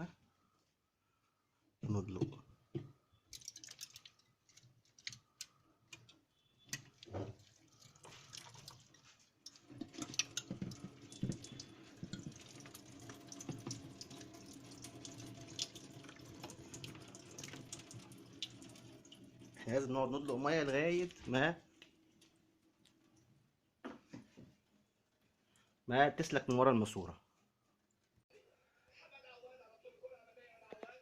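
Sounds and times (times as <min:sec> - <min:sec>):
water pouring into drain pipe: 0:03.3 - 0:05.1, 0:06.7 - 0:21.1.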